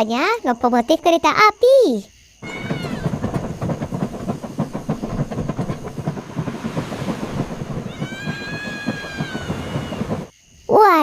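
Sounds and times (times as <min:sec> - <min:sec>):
train rumbling clatter: 0:02.4 - 0:10.3.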